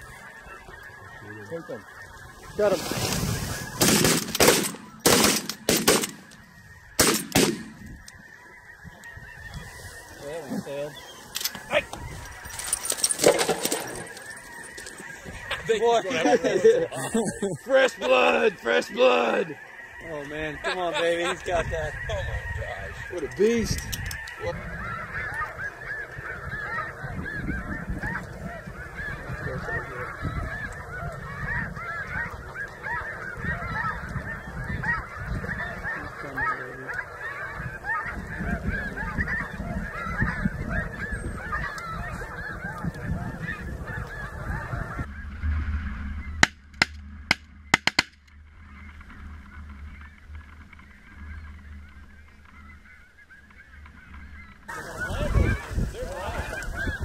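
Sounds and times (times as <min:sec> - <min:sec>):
geese honking: 0:00.0 - 0:57.0
low wind rumble: 0:00.0 - 0:57.0
shotgun shots: 0:03.8 - 0:06.3, 0:07.0 - 0:07.8.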